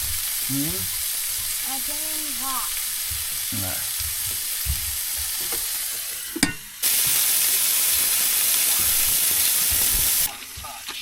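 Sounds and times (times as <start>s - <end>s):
burgers sizzling in a frying pan: 0.0s - 11.0s
low knocks: 3.0s - 5.6s.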